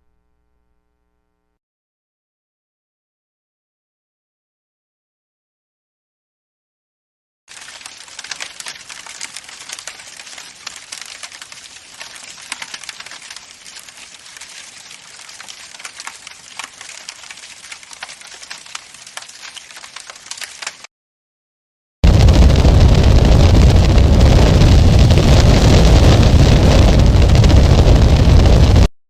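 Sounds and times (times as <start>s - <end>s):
fire crackling: 7.5s - 20.9s, 22.0s - 28.9s.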